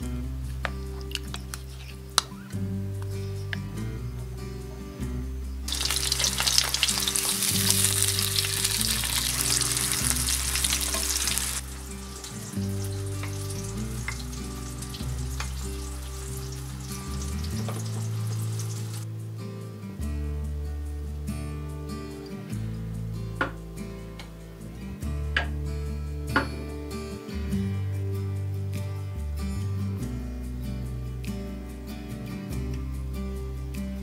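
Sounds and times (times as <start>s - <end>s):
soft background music: 0.0s - 34.0s
food sizzling in a pan: 5.7s - 19.0s.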